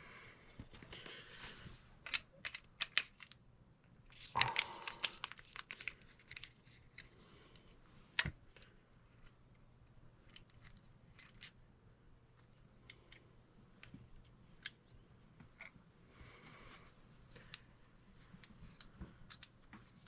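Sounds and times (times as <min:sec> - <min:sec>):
small clicks and taps of hand work: 0:18.3 - 0:20.0.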